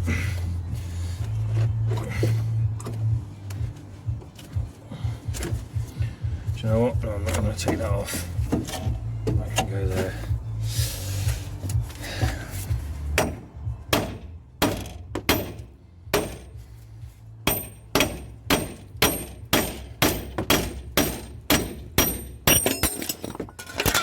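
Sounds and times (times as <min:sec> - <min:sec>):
hammer striking metal: 0:13.2 - 0:16.6, 0:17.4 - 0:24.0.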